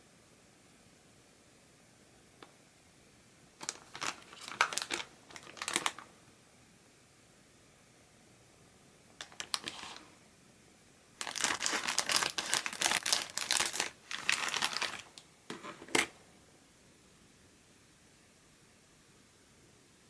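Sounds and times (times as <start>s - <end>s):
plastic packaging crinkling: 3.6s - 6.1s, 9.2s - 10.1s, 11.2s - 16.2s.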